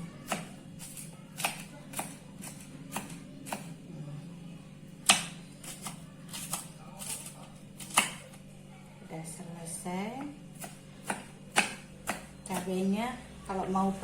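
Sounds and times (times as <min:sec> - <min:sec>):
knife chopping on cutting board: 0:00.2 - 0:03.7, 0:05.0 - 0:08.4, 0:10.6 - 0:12.7.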